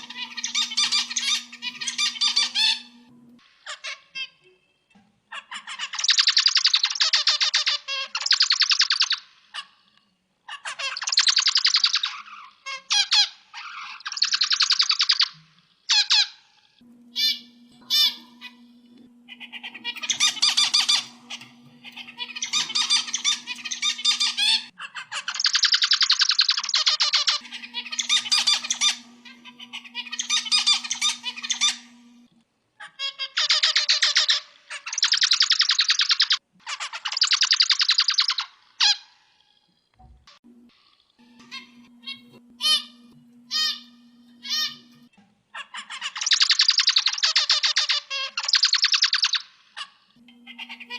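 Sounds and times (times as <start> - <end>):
finch singing: 0.0 - 3.4, 16.9 - 32.3, 41.3 - 49.4, 50.2 - 50.9.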